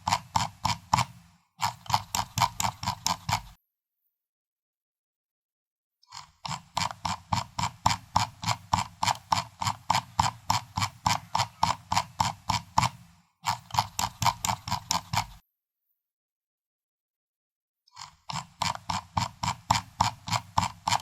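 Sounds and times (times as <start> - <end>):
mouse scroll wheel clicks: 0.0 - 3.6, 6.1 - 15.4, 18.0 - 21.0.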